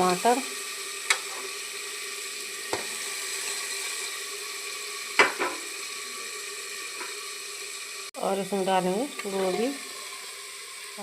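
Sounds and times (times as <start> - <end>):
frying in hot oil: 0.0 - 11.0
spoon knocking against pot: 5.2 - 5.7.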